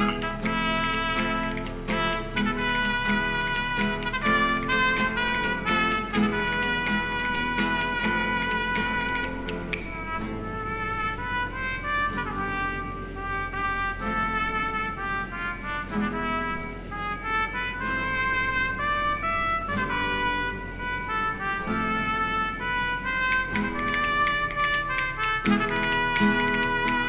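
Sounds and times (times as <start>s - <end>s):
brass background music: 0.0s - 27.0s.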